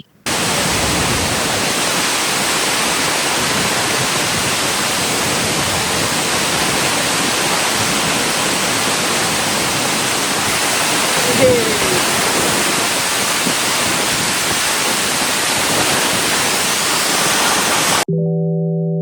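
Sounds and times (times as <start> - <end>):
waterfall rushing: 0.3 - 18.1.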